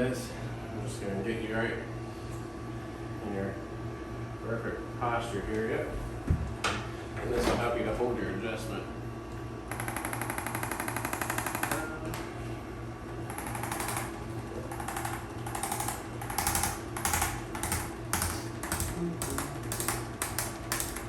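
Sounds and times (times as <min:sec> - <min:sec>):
electric percussion device tapping: 0:13.3 - 0:21.0.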